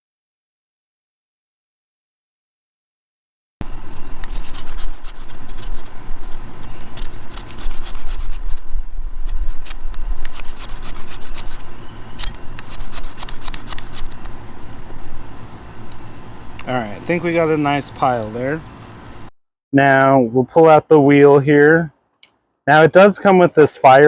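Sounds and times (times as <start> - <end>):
grater rasping over wood: 4.2 - 8.6, 9.2 - 14.3.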